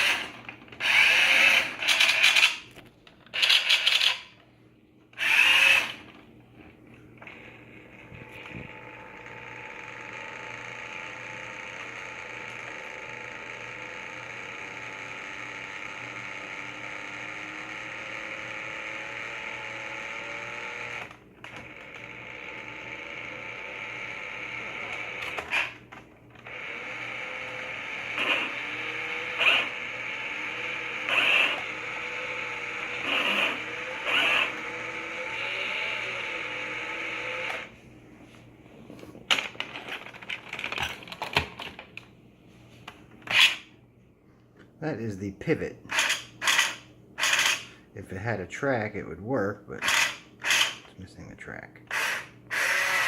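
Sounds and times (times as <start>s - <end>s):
gears creaking and ratcheting: 0.0s - 4.4s, 5.2s - 6.2s, 7.2s - 37.7s, 39.3s - 42.0s, 43.2s - 43.7s, 45.9s - 47.7s, 49.8s - 50.9s
toy motors whirring: 0.0s - 4.4s, 5.2s - 6.2s, 7.3s - 37.7s, 43.2s - 43.7s, 45.9s - 47.7s, 49.8s - 50.9s, 51.9s - 53.0s.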